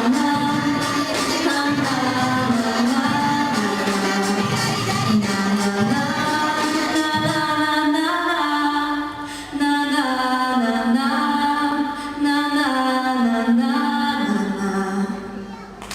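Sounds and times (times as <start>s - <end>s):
singer breathing: 9.2s - 9.6s.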